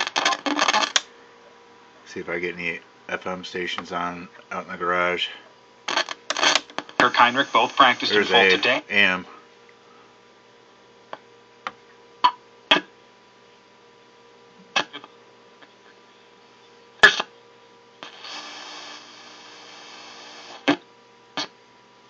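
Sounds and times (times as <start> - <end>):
radio crackles and clicks: 0.0 - 1.1, 2.1 - 9.3, 14.6 - 16.0, 17.0 - 17.4, 18.0 - 21.6
radio static hiss: 0.0 - 13.1, 14.0 - 21.8
faint steady radio whistle: 18.0 - 20.8.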